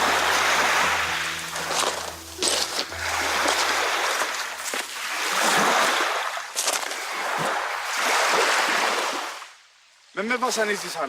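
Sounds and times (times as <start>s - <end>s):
water splashes: 0.0s - 9.6s
waves washing onto shore: 0.0s - 9.6s.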